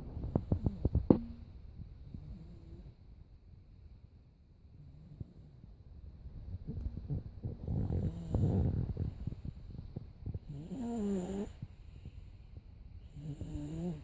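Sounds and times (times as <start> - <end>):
toddler snoring: 7.6 - 9.4, 10.4 - 11.7, 13.0 - 14.0.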